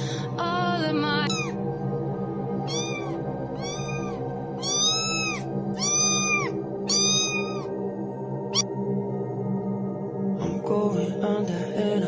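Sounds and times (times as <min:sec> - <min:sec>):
background music: 0:00.0 - 0:12.0
kitten meowing: 0:01.2 - 0:01.6, 0:02.7 - 0:07.7.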